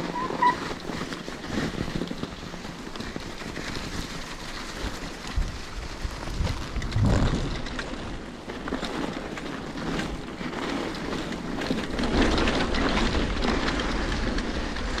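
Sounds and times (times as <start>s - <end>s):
bicycle rolling on trail: 0.0s - 15.0s
wind buffeting microphone: 0.8s - 8.7s.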